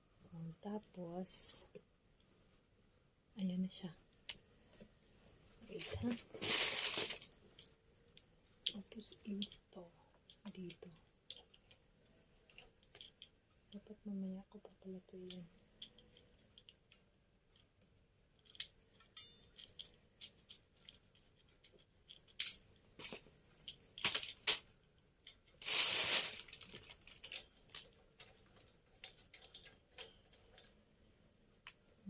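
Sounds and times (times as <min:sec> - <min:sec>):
rustle or scrape: 0:05.1 - 0:07.3, 0:25.6 - 0:27.4
small clicks of hard parts: 0:15.2 - 0:25.6, 0:26.6 - 0:30.8.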